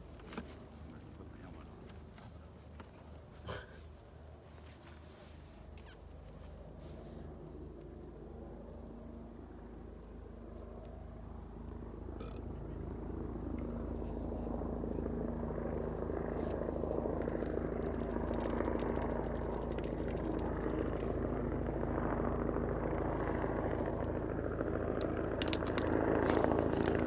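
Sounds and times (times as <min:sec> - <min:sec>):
helicopter rotor and turbine: 0:05.6 - 0:27.0.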